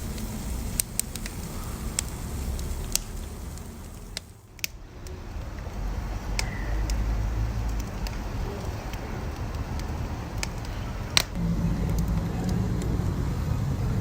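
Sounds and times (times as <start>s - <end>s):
loud fire pop: 0.0s - 4.8s
fire burning rumble: 0.0s - 14.0s
fire crackles and snaps: 0.0s - 14.0s.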